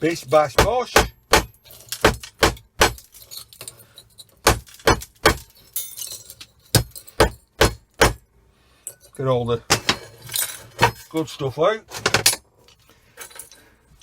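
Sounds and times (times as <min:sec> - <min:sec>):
hammer striking fuses: 0:00.4 - 0:03.2, 0:04.4 - 0:05.6, 0:06.7 - 0:08.3.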